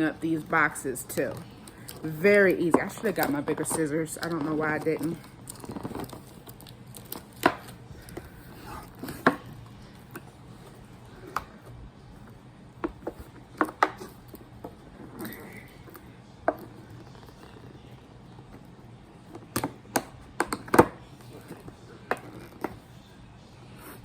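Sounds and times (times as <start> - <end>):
scissors snipping packaging: 1.1 - 8.3.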